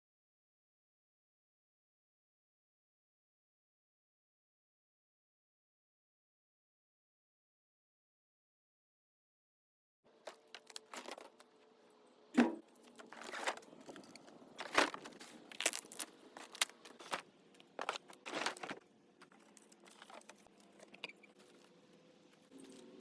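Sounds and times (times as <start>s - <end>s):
knocks and clatters of demolition: 10.3s - 11.5s.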